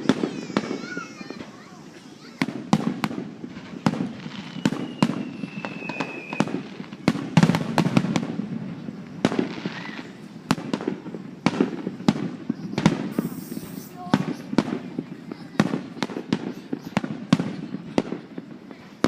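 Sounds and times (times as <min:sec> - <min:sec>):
firework whistle: 0:00.0 - 0:08.2, 0:09.2 - 0:11.6, 0:12.8 - 0:14.8
fireworks bangs: 0:00.0 - 0:19.0.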